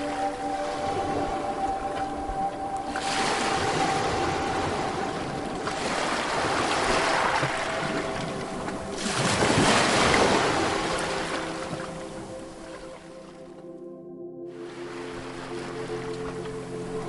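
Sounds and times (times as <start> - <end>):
waves breaking on shore: 0.0 - 13.4.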